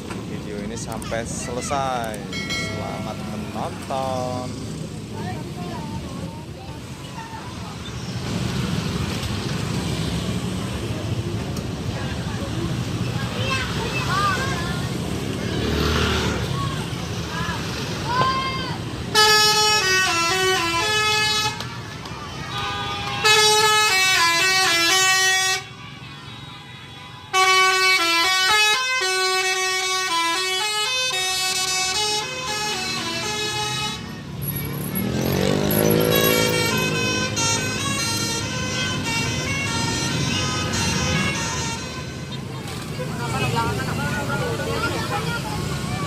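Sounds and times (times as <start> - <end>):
musical bus horn: 19.1 - 21.8, 22.4 - 34.2, 35.8 - 42.5.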